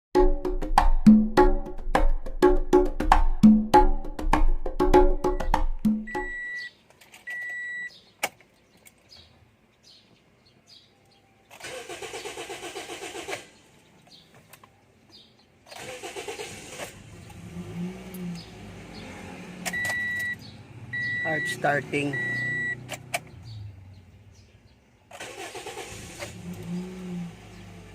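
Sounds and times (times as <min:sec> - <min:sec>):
short high beeps: 0:06.1 - 0:06.7, 0:07.3 - 0:07.9, 0:19.8 - 0:20.4, 0:21.0 - 0:22.8
car starter cranking: 0:11.5 - 0:13.7, 0:15.7 - 0:21.5, 0:25.1 - 0:27.9
car engine idling: 0:15.9 - 0:27.9.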